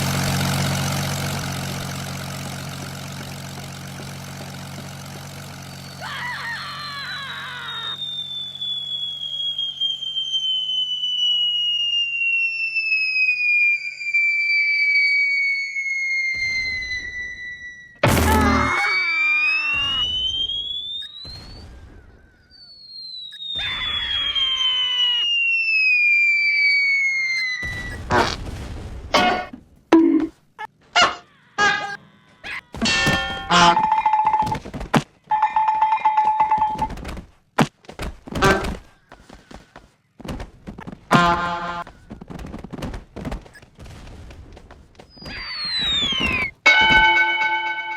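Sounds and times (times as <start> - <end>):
propeller airplane engine droning: 0.0 - 13.5, 44.8 - 47.9
cartoon falling whistle: 6.0 - 28.3, 45.1 - 47.9.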